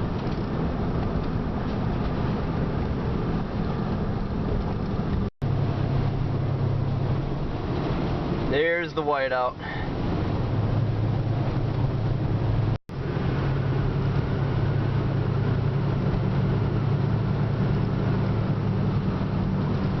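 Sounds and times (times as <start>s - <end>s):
in-cabin engine hum: 0.0s - 20.0s
road and wind noise: 0.0s - 20.0s.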